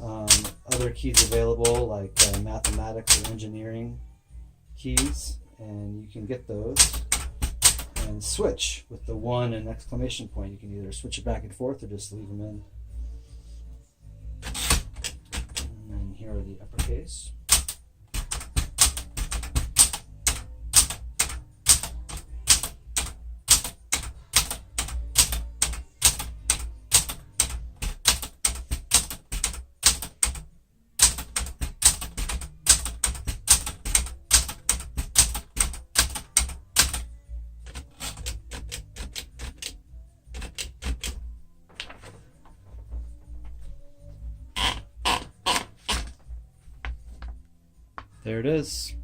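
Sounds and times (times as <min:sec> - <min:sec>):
manual typewriter keys striking: 0:00.0 - 0:03.4, 0:04.9 - 0:05.3, 0:06.7 - 0:08.2, 0:14.4 - 0:15.8, 0:16.6 - 0:37.1, 0:37.7 - 0:41.2, 0:44.6 - 0:46.2.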